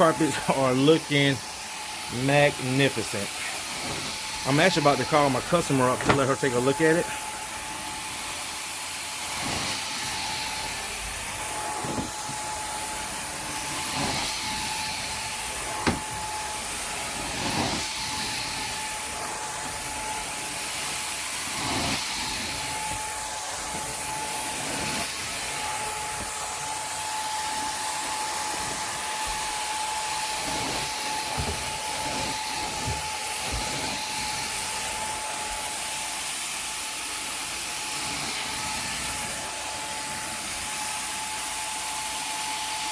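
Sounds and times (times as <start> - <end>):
carpet cleaning machine whining: 0.0 - 42.9.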